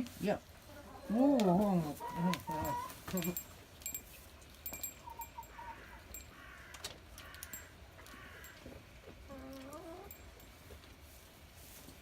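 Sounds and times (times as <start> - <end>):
hens clucking: 0.6 - 3.4, 5.0 - 10.2.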